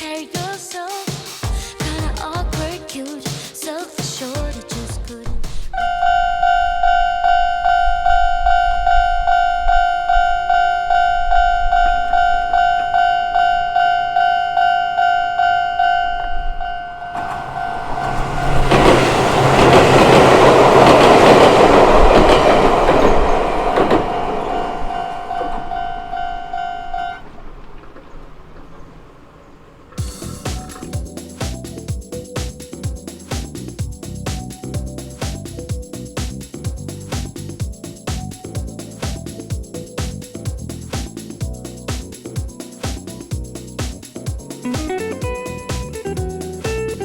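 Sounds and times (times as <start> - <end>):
level-crossing warning bell ringing: 5.9 - 27.2
train wheels rushing on rails: 17.2 - 25.8.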